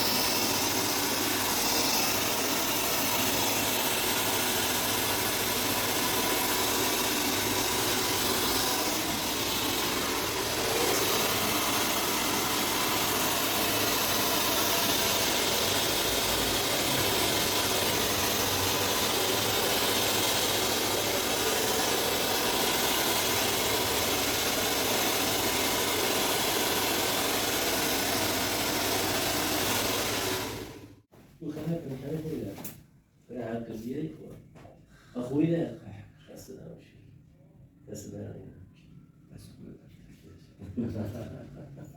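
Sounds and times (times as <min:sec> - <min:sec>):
small motor running: 0:00.0 - 0:31.0.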